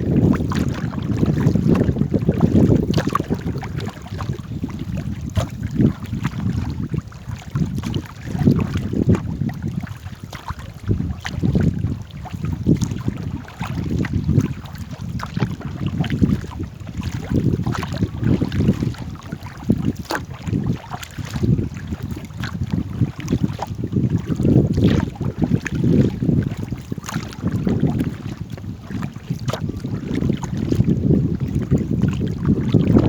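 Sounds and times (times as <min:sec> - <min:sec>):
water lapping against boat: 0:00.0 - 0:33.0
wind rumbling on microphone: 0:00.0 - 0:33.0
faint knocks and splashes: 0:05.3 - 0:06.6, 0:12.8 - 0:22.6, 0:23.2 - 0:29.6.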